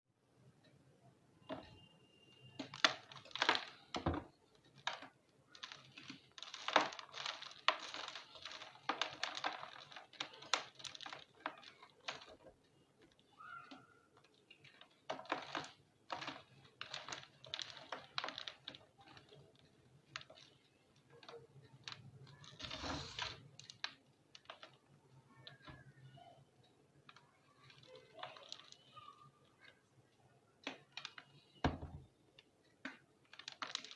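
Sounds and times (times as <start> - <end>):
chalk block crunching: 4.9 - 12.4, 21.3 - 23.4.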